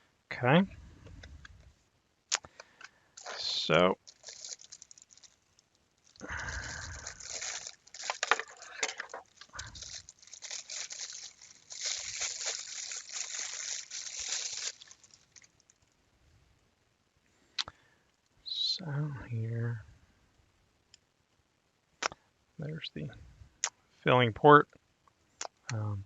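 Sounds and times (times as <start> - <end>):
packaging rustling and crinkling: 3.2 - 15.8.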